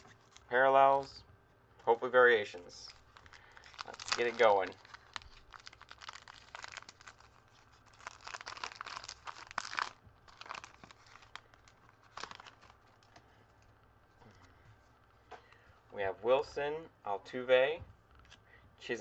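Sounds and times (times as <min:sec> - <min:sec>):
card pack wrapper crinkling: 0:00.0 - 0:00.5, 0:02.8 - 0:13.2.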